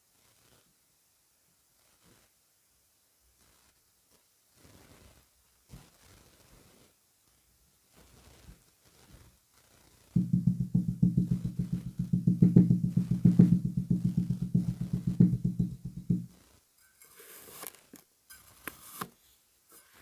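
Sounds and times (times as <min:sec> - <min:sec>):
fast run of low thuds: 0:10.2 - 0:16.3.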